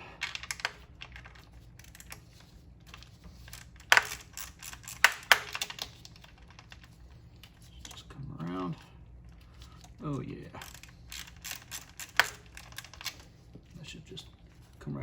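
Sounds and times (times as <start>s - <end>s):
ratchet clicking: 3.4s - 6.0s, 10.6s - 13.2s.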